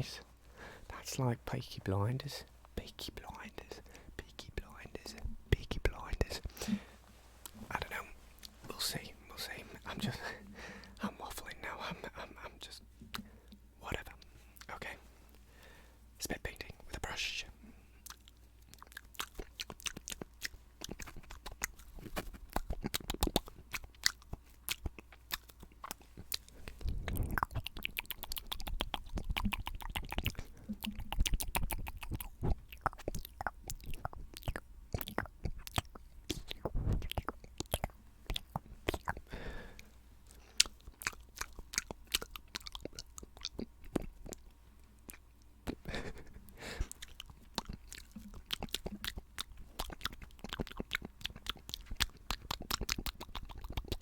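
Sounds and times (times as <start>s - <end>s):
wet mouth clicks and smacks: 18.0s - 54.0s.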